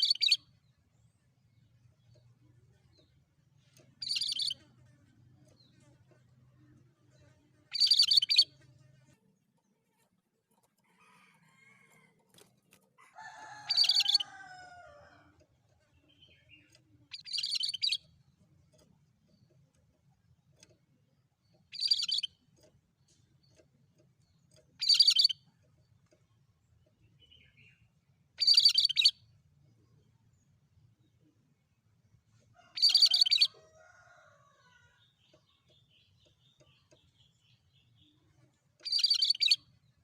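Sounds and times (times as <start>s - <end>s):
bird chirping: 0.0s - 4.7s, 7.1s - 8.6s, 15.8s - 19.7s, 20.6s - 33.8s, 34.5s - 40.0s.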